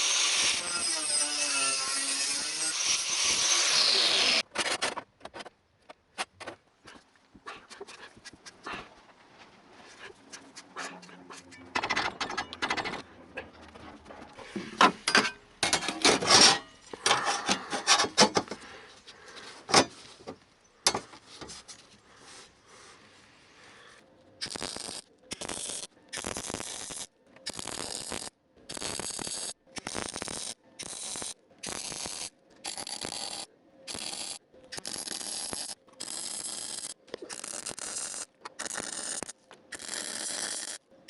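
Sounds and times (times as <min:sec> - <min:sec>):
welder crackling bursts: 0:00.0 - 0:04.4, 0:24.4 - 0:40.8
metallic scraping and clattering: 0:11.3 - 0:18.5.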